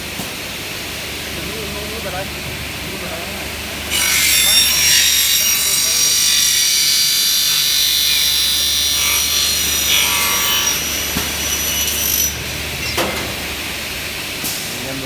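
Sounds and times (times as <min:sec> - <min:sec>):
saw cutting aluminium screech: 0:03.9 - 0:13.0.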